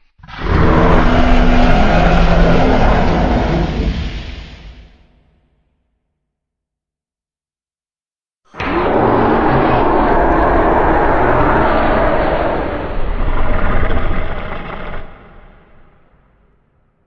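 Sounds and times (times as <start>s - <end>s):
creature roar: 0.2s - 5.0s, 8.5s - 15.6s.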